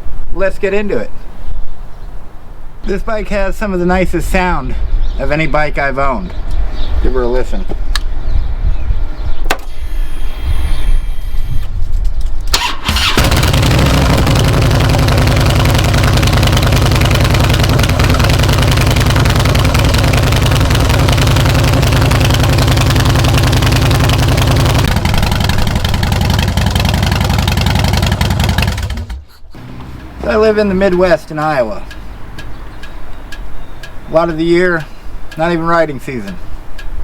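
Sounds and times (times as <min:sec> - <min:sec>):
motorcycle engine idling: 0:13.0 - 0:30.3.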